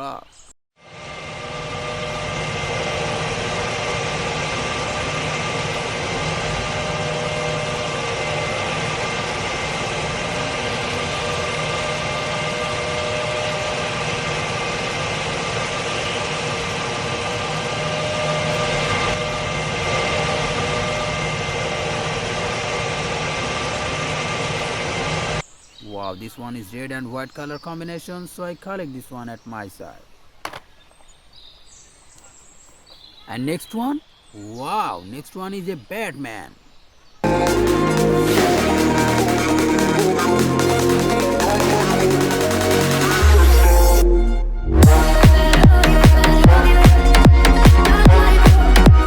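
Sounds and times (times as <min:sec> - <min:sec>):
engine-like running with whine: 0:00.8 - 0:25.4, 0:37.2 - 0:49.0.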